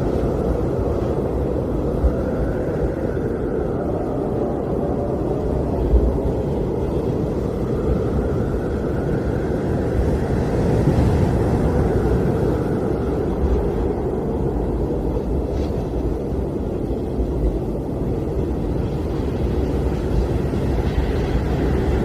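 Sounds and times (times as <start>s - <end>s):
blizzard wind blowing: 0.0s - 22.0s.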